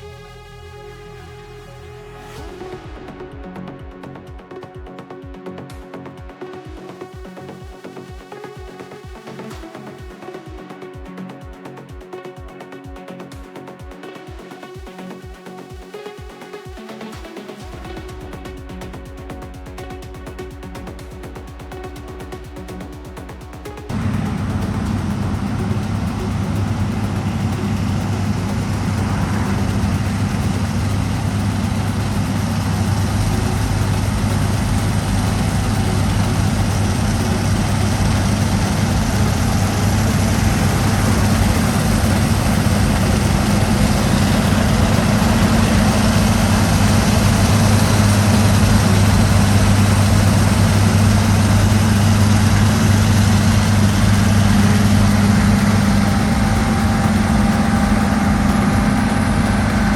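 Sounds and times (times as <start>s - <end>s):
heavy diesel engine droning: 23.9s - 59.9s.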